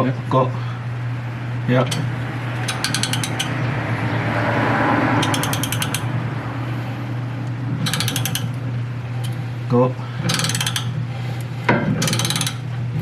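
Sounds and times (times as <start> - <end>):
steady low hum: 0.0 - 13.0
meshing gears rubbing: 1.9 - 3.6, 5.1 - 6.3, 7.8 - 8.6, 10.3 - 11.0, 12.0 - 12.7
rapid ratchet-like clicking: 1.9 - 3.6, 5.2 - 6.2, 7.8 - 8.6, 10.3 - 10.9, 12.0 - 12.7.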